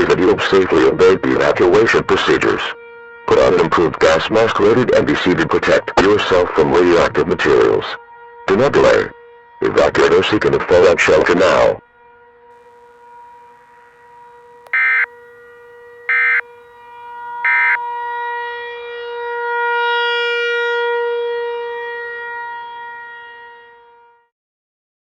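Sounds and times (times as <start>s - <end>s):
civil defense siren: 0.0s - 24.3s
digital data bursts: 14.7s - 15.1s, 16.1s - 16.4s, 17.4s - 17.8s.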